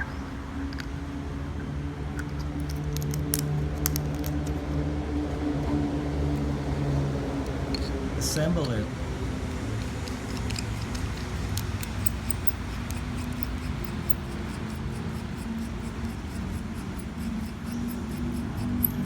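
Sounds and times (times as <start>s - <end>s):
steady low hum: 1.2s - 19.0s
clicking of small plastic and metal parts: 2.2s - 4.6s, 9.7s - 14.3s.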